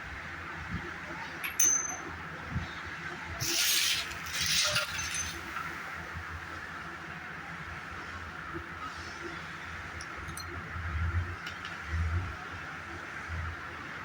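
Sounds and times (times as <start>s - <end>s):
metal gear clinking and ringing: 1.4s - 2.1s, 3.4s - 5.8s, 10.2s - 10.5s
metal scraping on metal: 3.4s - 5.8s.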